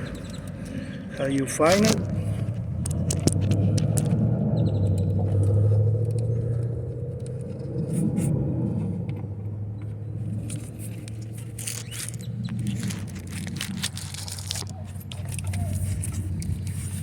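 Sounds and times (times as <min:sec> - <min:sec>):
steady low rumble: 0:00.0 - 0:17.0
metal parts clicking and scraping: 0:10.3 - 0:17.0.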